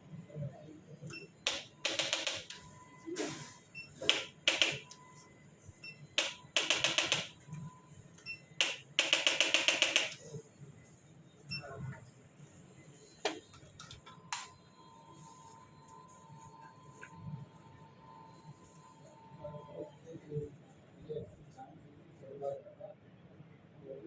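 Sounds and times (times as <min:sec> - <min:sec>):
rapid mechanical tapping: 0:01.4 - 0:02.6, 0:04.0 - 0:05.0, 0:06.2 - 0:07.4, 0:08.6 - 0:10.2
sharp clicks: 0:01.5 - 0:02.6, 0:04.0 - 0:04.9, 0:06.2 - 0:07.3, 0:08.6 - 0:10.2.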